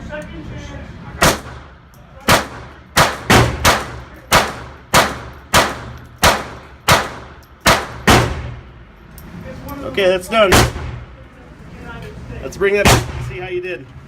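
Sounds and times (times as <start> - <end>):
gunshots: 1.2 - 8.6, 10.5 - 11.0, 12.8 - 13.3.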